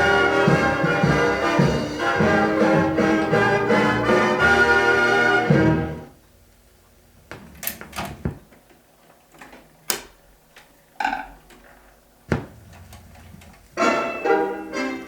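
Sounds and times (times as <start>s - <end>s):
orchestral song: 0.0s - 6.1s, 13.8s - 15.0s
record surface hiss and crackle: 5.9s - 15.0s.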